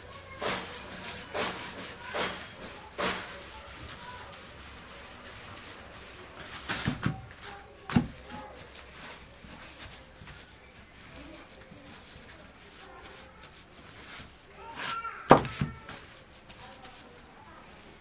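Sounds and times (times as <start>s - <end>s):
hand file rasping: 0.3s - 6.0s.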